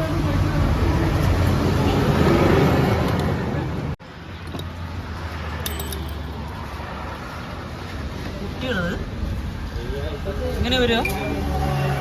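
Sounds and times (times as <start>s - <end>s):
metallic clinks of tools and parts: 5.6s - 6.4s.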